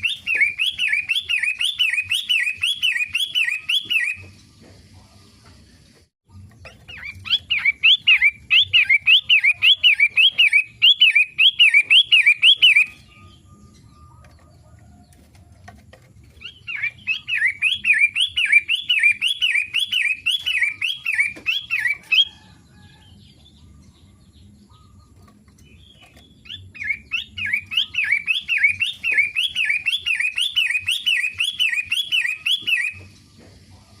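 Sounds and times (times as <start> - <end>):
shrike chirping: 6.4 - 14.2.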